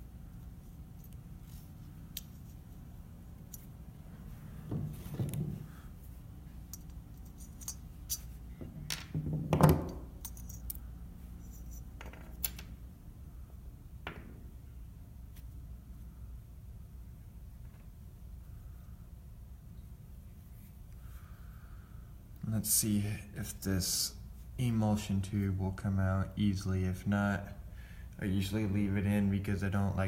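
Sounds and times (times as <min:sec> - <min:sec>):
steady low hum: 0:00.0 - 0:30.0
small metal clicks: 0:10.2 - 0:10.9.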